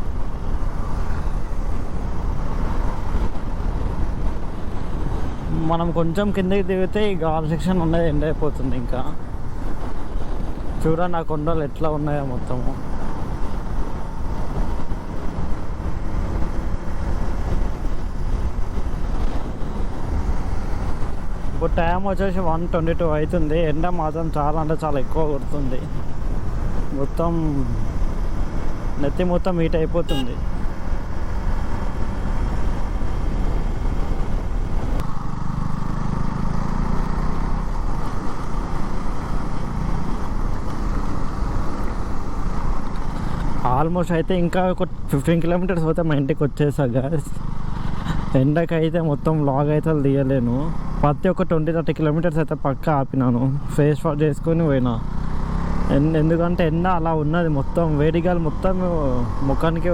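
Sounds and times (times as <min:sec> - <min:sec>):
wind rush on microphone: 0:00.0 - 0:46.6
motorcycle engine and road noise: 0:00.0 - 0:59.9
motorcycle engine running: 0:30.0 - 0:43.9, 0:47.2 - 0:48.6, 0:54.2 - 0:59.9.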